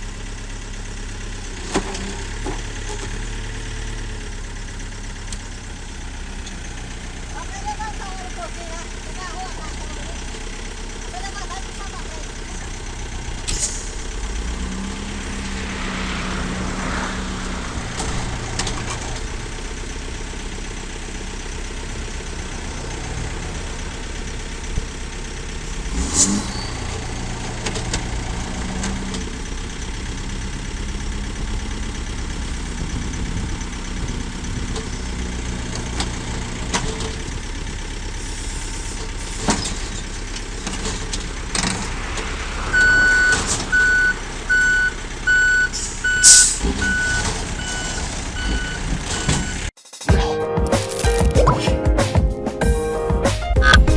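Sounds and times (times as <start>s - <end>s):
heavy vehicle engine running: 0.0s - 49.8s
reversing beeper: 42.5s - 49.7s.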